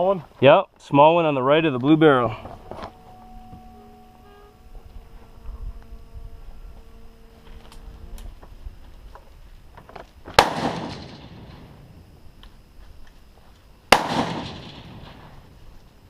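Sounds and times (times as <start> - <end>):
rifle shots with rolling echo: 10.3 - 12.0, 13.9 - 15.6.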